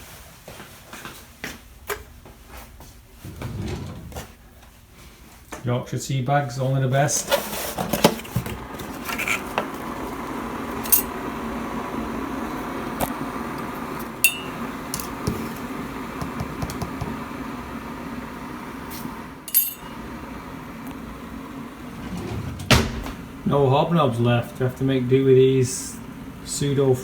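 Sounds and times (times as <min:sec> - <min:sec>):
electric kettle humming: 0:07.9 - 0:22.0, 0:22.7 - 0:27.0
crockery clinking: 0:14.3 - 0:14.6, 0:19.5 - 0:19.9.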